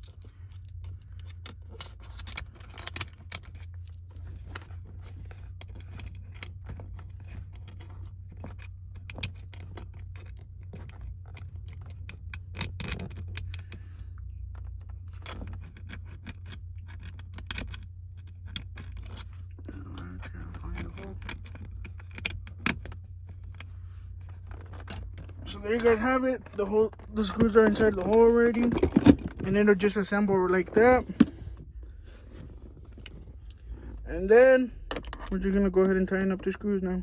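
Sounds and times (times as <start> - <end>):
steady low hum: 0.0 - 37.0
plastic cap and screws rattling: 15.2 - 31.6.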